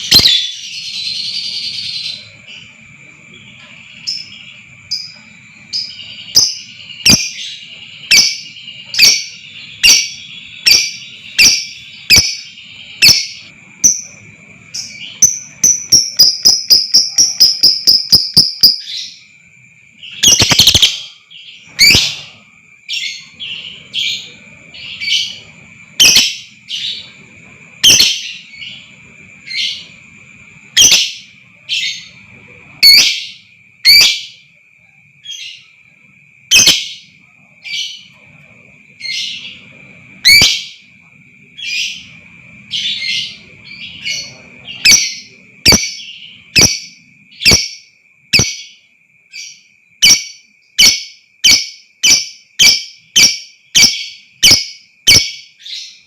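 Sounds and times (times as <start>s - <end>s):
lovebird chirping: 0.0s - 34.4s, 35.2s - 56.0s.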